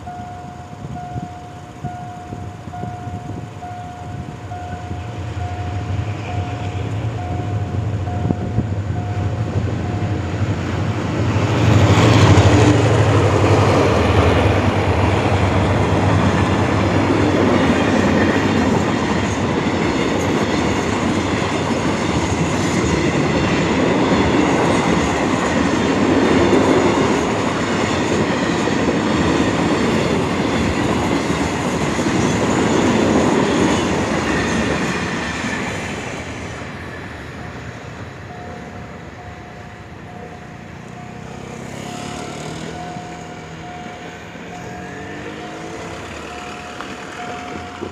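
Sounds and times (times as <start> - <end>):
level crossing warning tone: 0.0 - 10.6, 37.4 - 47.9
locomotive engine drone: 0.0 - 47.9
coaches clattering over rail joints: 3.2 - 47.9.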